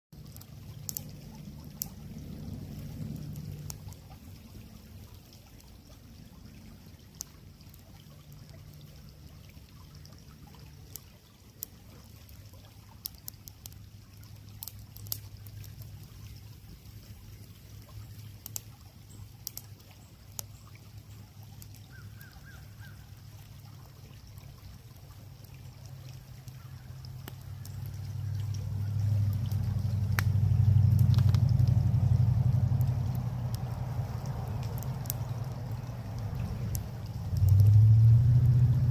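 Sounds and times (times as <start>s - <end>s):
creek trickling: 0.1s - 38.9s
wood fire crackling and popping: 0.2s - 4.3s, 13.0s - 16.2s, 18.2s - 18.8s, 19.4s - 20.5s, 26.4s - 38.9s
low engine hum: 0.2s - 10.6s, 25.2s - 38.9s.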